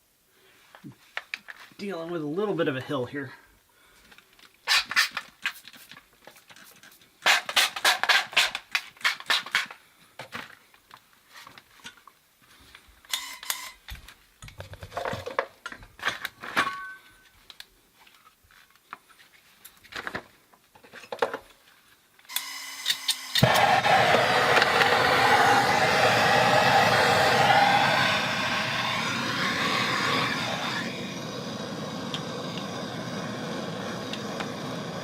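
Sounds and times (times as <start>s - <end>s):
gas torch hissing: 22.3s - 35.0s.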